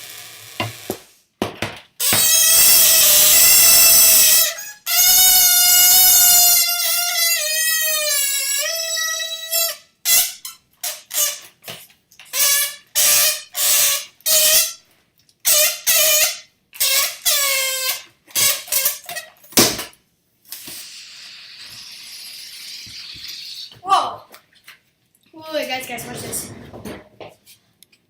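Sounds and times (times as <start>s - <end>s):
balloon neck squealing: 2.0s - 11.6s, 12.3s - 14.8s, 15.4s - 19.5s, 20.5s - 24.1s.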